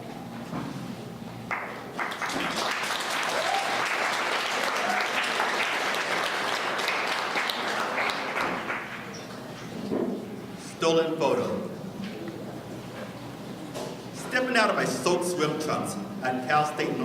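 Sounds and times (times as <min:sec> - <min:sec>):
audience applauding: 0:01.5 - 0:09.2.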